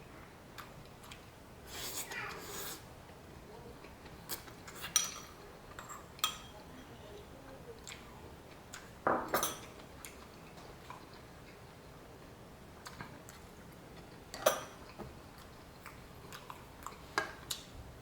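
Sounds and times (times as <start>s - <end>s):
utensils clinking against dishes: 4.7s - 7.0s, 9.2s - 9.8s, 14.4s - 14.9s.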